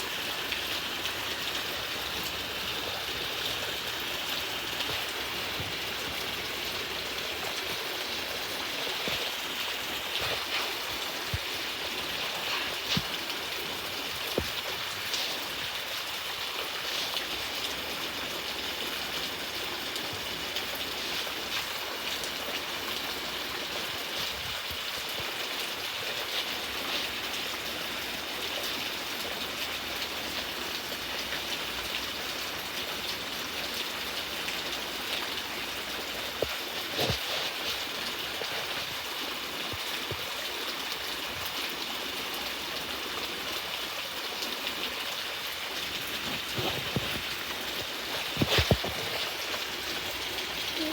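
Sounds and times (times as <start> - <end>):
steady rain hiss: 0.0 - 50.9
raindrop hits: 45.9 - 50.9.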